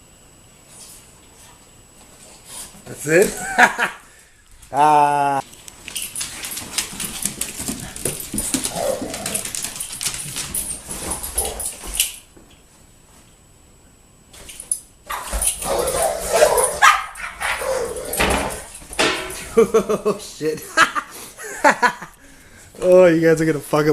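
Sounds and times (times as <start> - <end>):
dogs scuffling: 5.4 - 13.3, 14.3 - 20.0
dog vocal sounds: 15.1 - 18.7.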